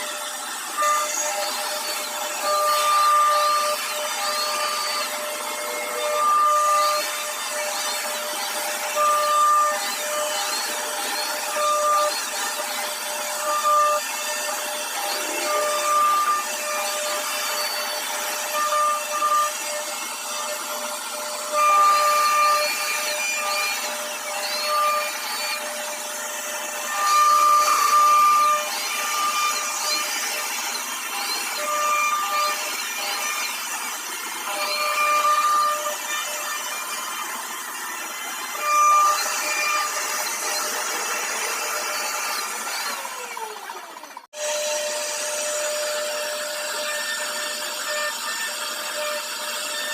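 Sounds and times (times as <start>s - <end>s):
router cutting wood with whine: 0.0s - 49.9s.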